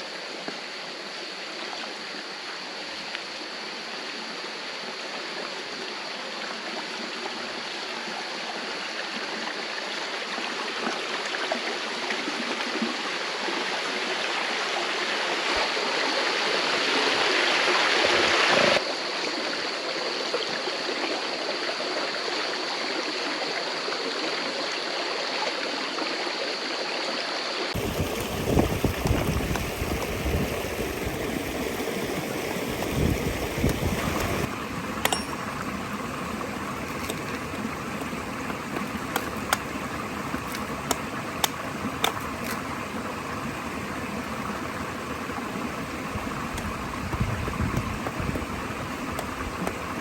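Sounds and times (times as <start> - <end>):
stream water rushing over rocks: 0.0 - 50.0.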